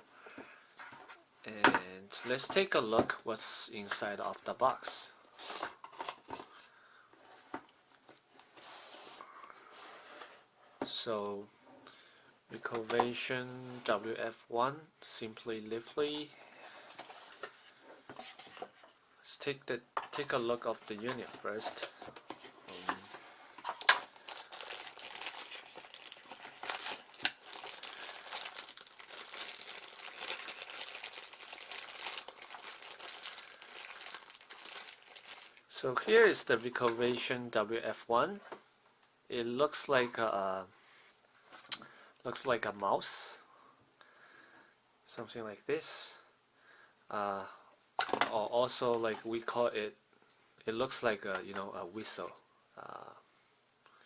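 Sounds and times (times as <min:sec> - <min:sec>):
plastic packaging crinkling: 0:23.6 - 0:35.8.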